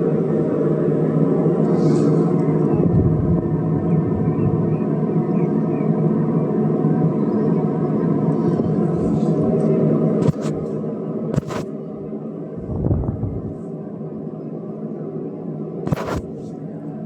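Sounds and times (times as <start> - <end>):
exhaust fan humming: 2.3 - 4.9, 8.6 - 13.7.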